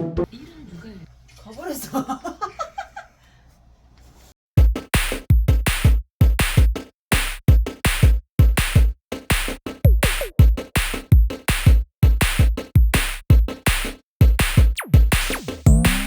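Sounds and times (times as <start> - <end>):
electronic music with drum beat: 4.6 - 16.0.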